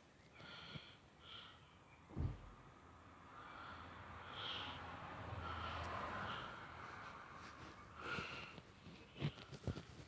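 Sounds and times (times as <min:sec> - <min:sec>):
person breathing and sniffing: 0:03.4 - 0:10.0.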